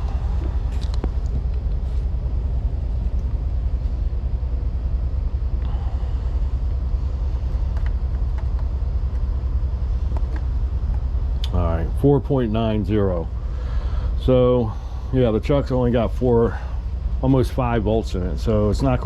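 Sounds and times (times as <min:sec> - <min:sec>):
engine idling: 0:00.0 - 0:19.0.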